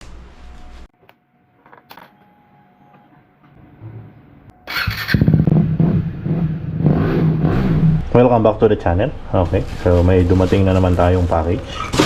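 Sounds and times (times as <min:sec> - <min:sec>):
motorcycle engine starting and idling: 0:04.6 - 0:07.8.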